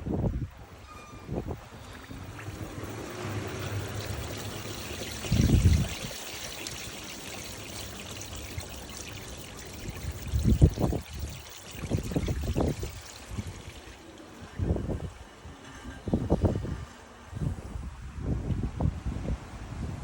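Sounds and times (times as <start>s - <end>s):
water pouring in washing machine: 1.4s - 14.5s.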